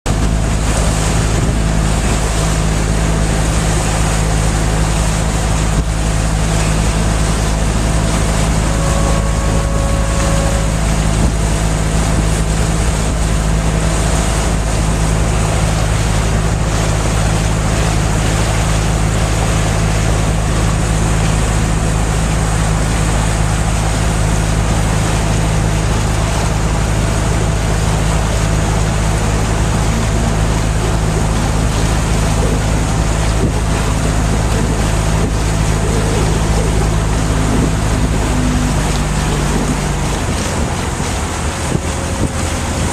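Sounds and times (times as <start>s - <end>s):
boat engine humming: 0.0s - 42.9s
rushing water: 0.1s - 42.9s
wind noise: 26.1s - 42.9s.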